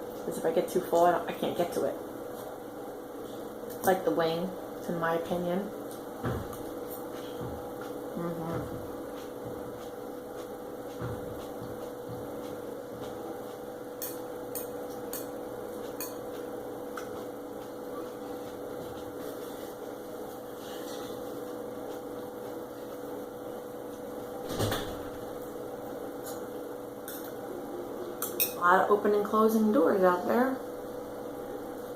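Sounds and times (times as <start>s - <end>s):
background hum: 0.0s - 31.9s
door closing: 24.4s - 25.1s.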